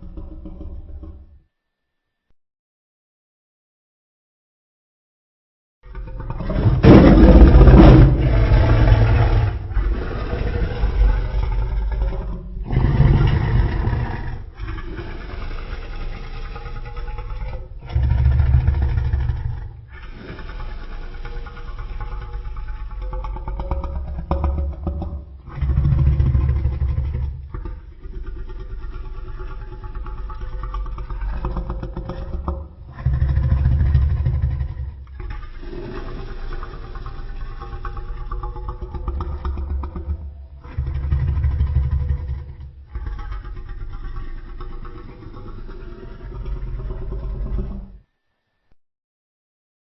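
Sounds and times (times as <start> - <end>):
deep monster growls: 0.0 - 1.3, 5.8 - 48.0
monster roaring: 6.4 - 21.2.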